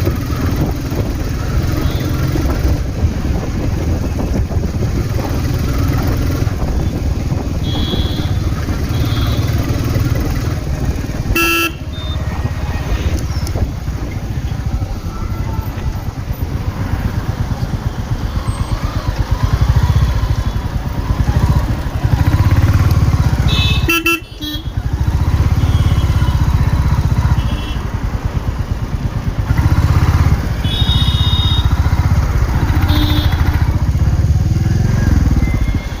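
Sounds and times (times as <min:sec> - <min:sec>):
motorcycle engine revving: 0:00.0 - 0:36.0
vehicle horn toots: 0:01.7 - 0:02.4, 0:06.8 - 0:09.8, 0:11.3 - 0:12.3, 0:23.3 - 0:24.8, 0:25.4 - 0:26.5, 0:27.3 - 0:27.9, 0:30.5 - 0:33.8.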